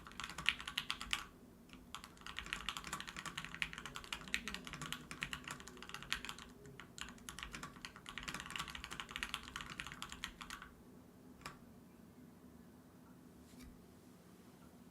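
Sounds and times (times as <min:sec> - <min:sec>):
typing on mechanical keyboard: 0:00.0 - 0:10.7.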